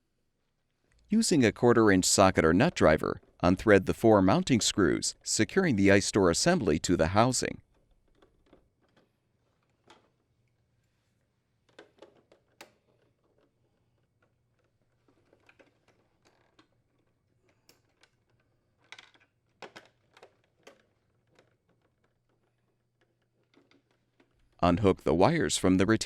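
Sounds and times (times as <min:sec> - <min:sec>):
plastic parts being handled: 0:11.2 - 0:24.6.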